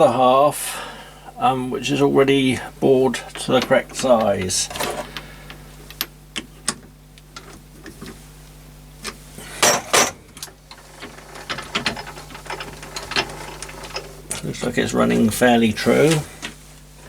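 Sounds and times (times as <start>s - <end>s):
steady low hum: 0.0s - 17.0s
metal clicks and knocks: 9.0s - 14.5s.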